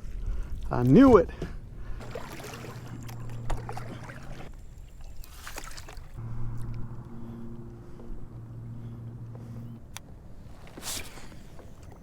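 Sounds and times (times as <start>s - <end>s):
water splashes around kayak: 0.0s - 6.2s
steady low hum: 6.2s - 12.0s.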